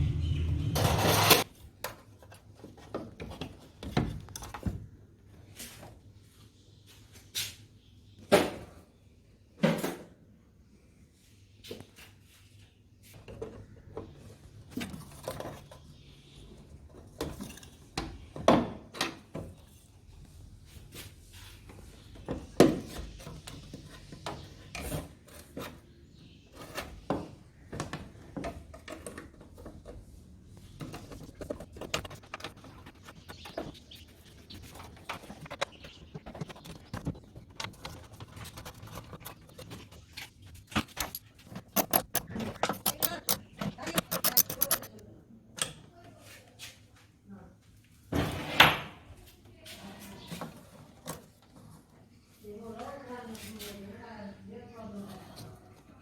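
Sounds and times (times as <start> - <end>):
tools and parts clinking: 35.1 - 45.0.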